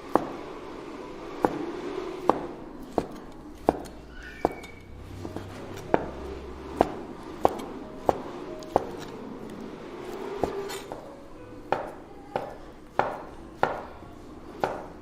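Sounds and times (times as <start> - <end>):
knife chopping on cutting board: 0.1 - 0.4, 1.4 - 6.2, 6.8 - 9.1, 11.7 - 15.0.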